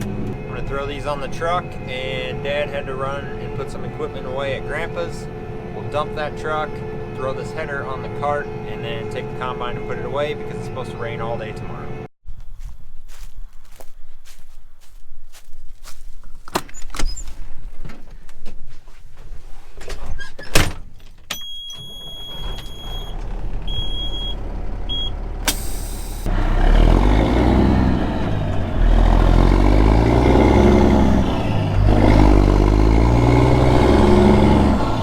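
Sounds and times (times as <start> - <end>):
truck engine running: 0.0 - 12.1, 21.8 - 35.0
vehicle warning chime beeping: 0.0 - 12.1, 21.3 - 35.0.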